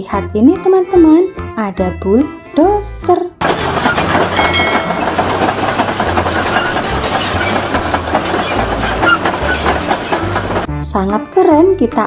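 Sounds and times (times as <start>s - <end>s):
plastic toy vehicle rattling: 3.4s - 10.7s.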